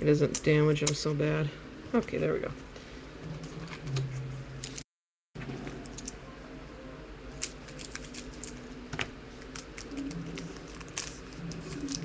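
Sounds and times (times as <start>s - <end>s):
cards clicking and snapping: 7.4s - 8.6s.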